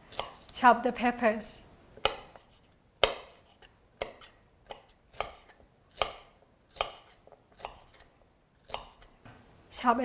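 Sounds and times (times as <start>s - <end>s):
knife chopping peppers: 0.0s - 0.6s, 2.0s - 9.3s.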